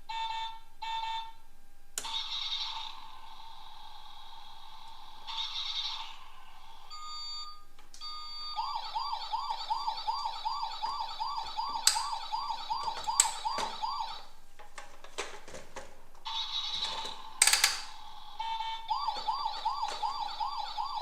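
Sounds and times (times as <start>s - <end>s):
toy siren tone: 2.0s - 7.2s, 8.1s - 14.3s, 16.3s - 21.0s
electronic beeps: 6.9s - 14.3s
sharp clicks: 17.4s - 17.9s.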